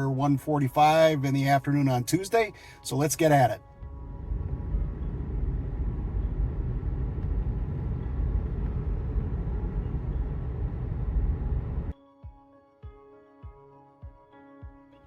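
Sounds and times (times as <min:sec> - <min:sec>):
car road noise rumble: 0:03.8 - 0:11.9.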